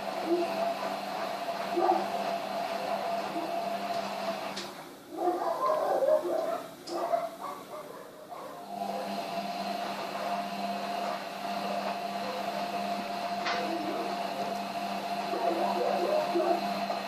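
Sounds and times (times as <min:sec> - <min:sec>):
small electric machine humming: 0:00.0 - 0:04.8, 0:08.5 - 0:17.0.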